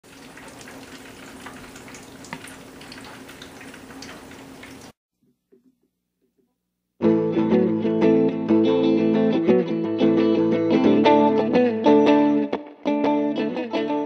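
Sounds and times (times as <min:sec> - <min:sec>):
hot oil sizzling and crackling: 0:00.0 - 0:05.0.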